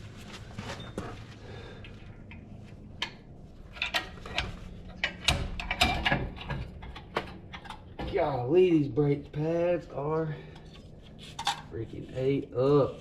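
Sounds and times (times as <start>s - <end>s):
metal tools clicking and knocking: 10.6s - 11.7s.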